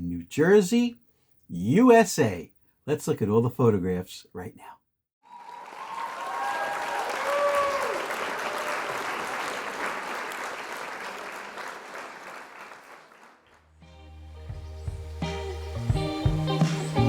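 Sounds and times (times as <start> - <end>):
crowd applause: 5.3 - 13.5
music: 13.8 - 17.0.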